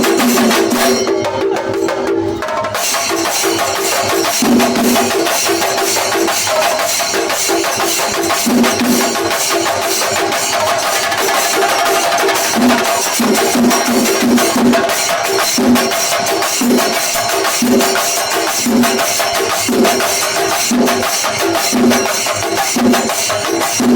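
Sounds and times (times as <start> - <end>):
cymbals clashing: 0.0 - 23.9
drums struck fast with sticks: 0.0 - 23.9.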